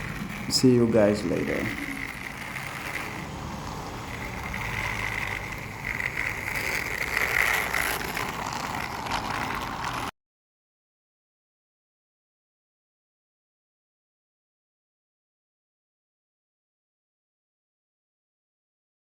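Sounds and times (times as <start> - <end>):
toy train motor whine: 0.0 - 10.1
toy train rolling rumble: 0.0 - 10.1.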